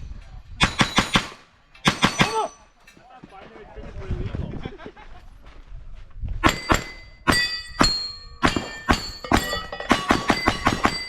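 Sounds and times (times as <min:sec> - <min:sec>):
pistol shots: 0:00.6 - 0:02.6, 0:06.4 - 0:11.0
steel target ringing: 0:06.4 - 0:11.0.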